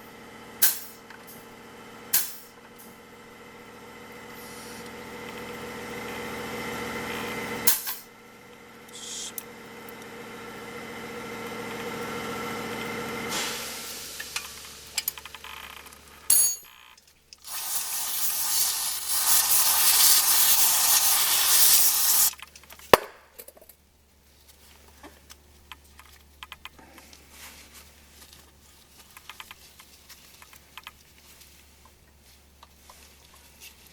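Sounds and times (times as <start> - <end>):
loud hissing: 8.9 - 9.4, 17.4 - 22.3.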